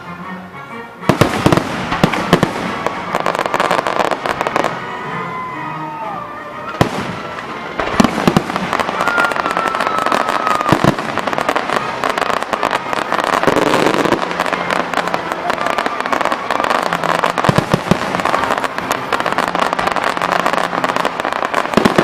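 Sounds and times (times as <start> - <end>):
firework falling whistle: 1.1 - 22.0
fireworks bangs and crackling: 1.1 - 22.0
long steady whistle: 8.7 - 14.8.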